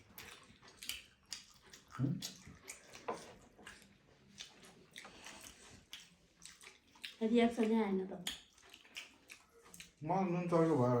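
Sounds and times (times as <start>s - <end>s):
person chewing: 0.0s - 10.3s
wet mouth clicks: 8.2s - 10.0s.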